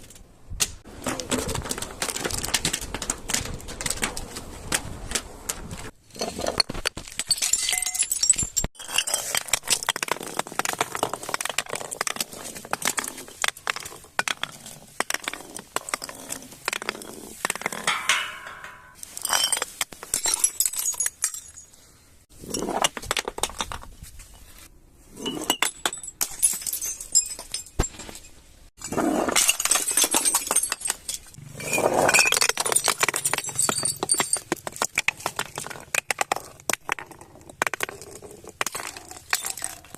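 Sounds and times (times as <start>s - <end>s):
glass bottles clinking and breaking: 6.1s - 10.1s, 17.5s - 21.7s, 25.2s - 39.9s.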